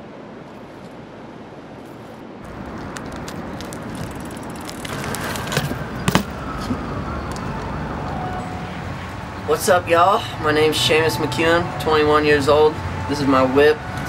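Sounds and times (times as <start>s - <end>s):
outdoor street noise: 0.0s - 14.0s
falling siren-like tone: 5.3s - 9.5s, 10.2s - 14.0s.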